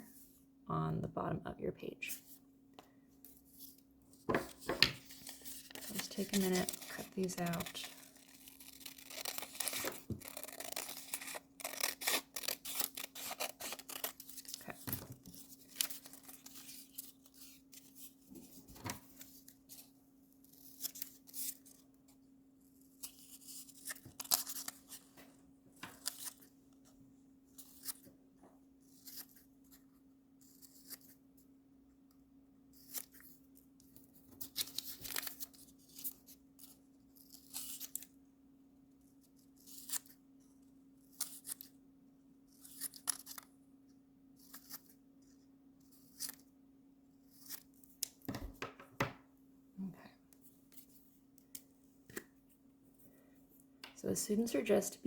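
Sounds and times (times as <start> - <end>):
paper rustling: 3.4 - 19.9
scissors snipping paper: 4.4 - 18.0, 22.9 - 25.0, 30.4 - 31.2, 42.5 - 43.5, 44.4 - 45.0.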